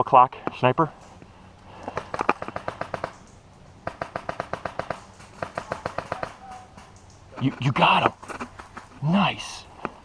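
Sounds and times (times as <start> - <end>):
airsoft rifle full-auto bursts: 2.0 - 3.2, 3.8 - 6.6.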